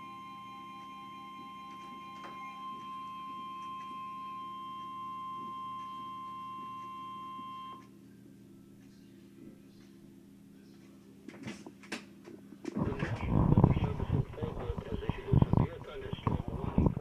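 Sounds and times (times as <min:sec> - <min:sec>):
low hum: 0:12.8 - 0:17.0.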